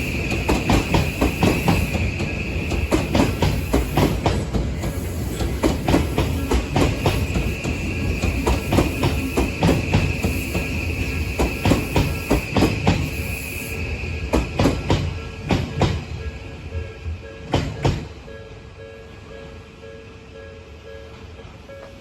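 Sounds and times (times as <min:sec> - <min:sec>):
train wheels clicking over rail joint: 0:00.0 - 0:13.2, 0:14.3 - 0:16.1, 0:17.4 - 0:18.2
level crossing warning bell: 0:15.6 - 0:22.0.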